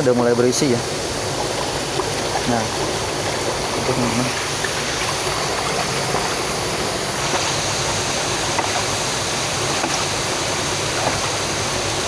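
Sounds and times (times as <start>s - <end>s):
water rushing through valve: 0.0s - 12.0s
valve knocking shut: 8.4s - 9.0s.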